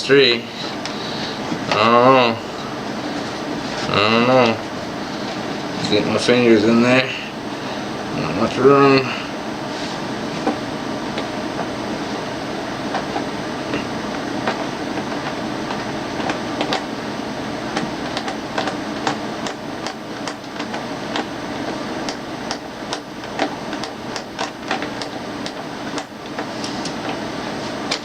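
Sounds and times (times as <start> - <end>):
steady background hum: 0.0 - 28.0.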